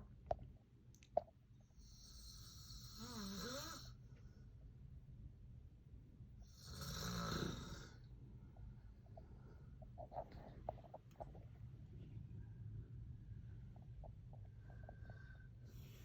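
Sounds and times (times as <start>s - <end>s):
man snoring: 2.0s - 3.9s, 6.6s - 8.0s.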